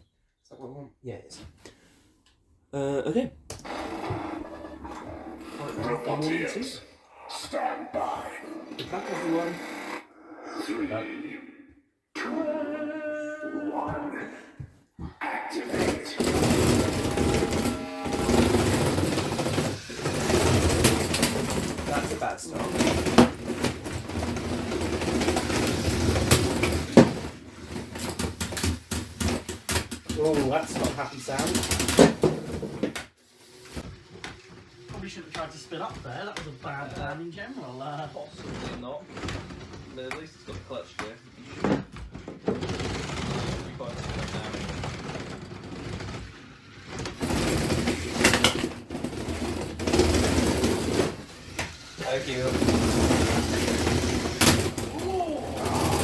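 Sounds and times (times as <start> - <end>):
toy robot motors whirring: 15.8 - 27.0, 45.8 - 56.0
plastic parts clattering: 15.8 - 33.0, 41.5 - 56.0.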